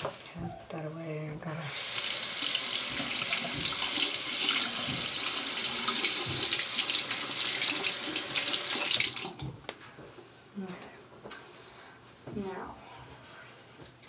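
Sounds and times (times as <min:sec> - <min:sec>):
tap water running into sink: 0:01.7 - 0:09.6.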